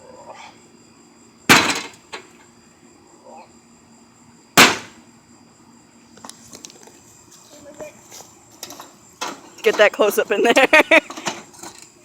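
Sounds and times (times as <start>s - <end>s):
heavy tool smashing microwave: 1.5s - 2.0s, 4.6s - 5.0s.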